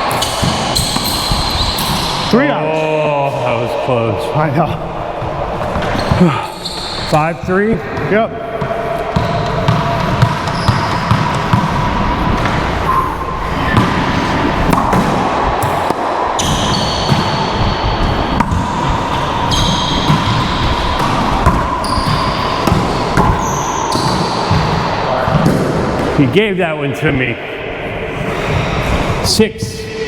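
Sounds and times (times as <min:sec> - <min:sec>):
racquetball hits echoing: 0:00.0 - 0:02.6, 0:04.7 - 0:26.5.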